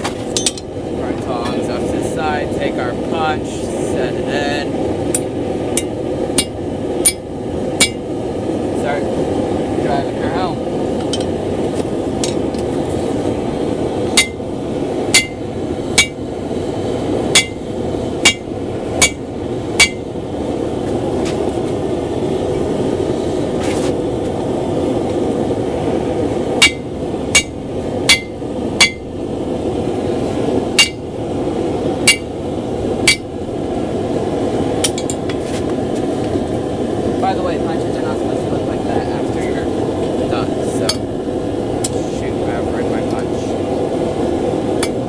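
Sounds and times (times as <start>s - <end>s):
forge roaring: 0.0s - 45.0s
hammer striking steel punch: 5.2s - 7.2s, 7.8s - 8.0s, 14.2s - 14.4s, 15.1s - 15.4s, 16.0s - 16.2s, 17.4s - 17.6s, 18.2s - 19.2s, 19.8s - 20.0s, 26.6s - 29.0s, 30.8s - 31.0s, 32.1s - 32.3s, 33.1s - 33.3s.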